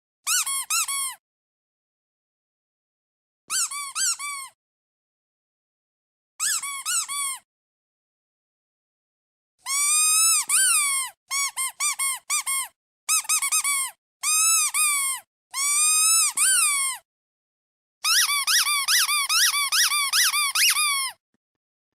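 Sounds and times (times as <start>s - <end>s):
squeaky duck toy squeaking: 0.2s - 1.2s, 3.5s - 4.6s, 6.4s - 7.5s, 9.6s - 17.0s, 18.0s - 21.2s.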